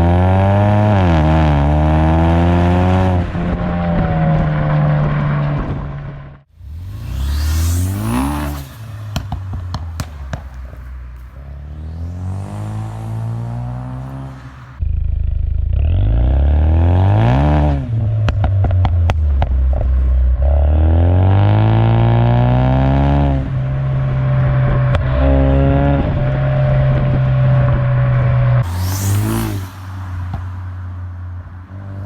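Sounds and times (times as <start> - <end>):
car engine revving: 0.0 - 32.0
exhaust pops and crackles: 3.2 - 6.4, 8.0 - 11.6, 17.9 - 20.6, 23.6 - 28.7, 30.2 - 30.8.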